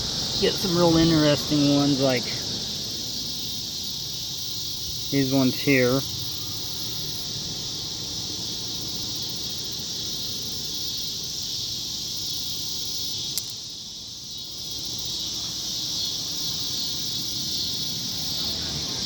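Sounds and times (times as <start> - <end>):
insects chorus: 0.0 - 19.0
sharp click: 13.3 - 13.6.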